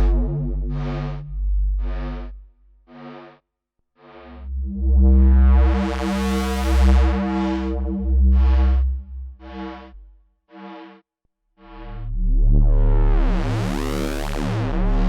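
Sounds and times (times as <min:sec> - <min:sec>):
deep synth bass note: 0:00.0 - 0:02.5, 0:06.7 - 0:10.1, 0:11.7 - 0:13.8.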